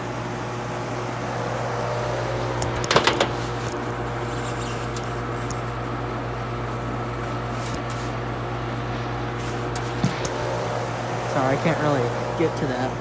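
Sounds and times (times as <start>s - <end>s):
air conditioner unit humming: 0.0s - 13.0s
clicks and rattles: 2.6s - 3.8s.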